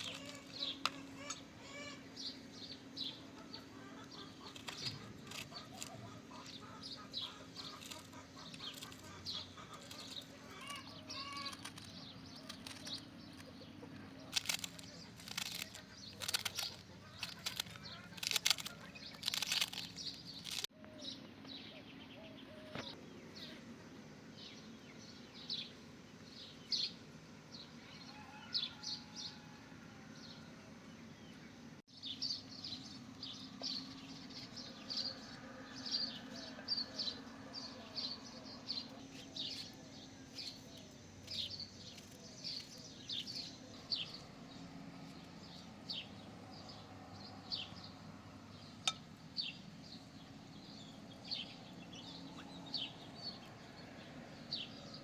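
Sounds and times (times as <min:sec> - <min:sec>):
small birds chirping: 0:00.0 - 0:29.5, 0:30.1 - 0:55.0.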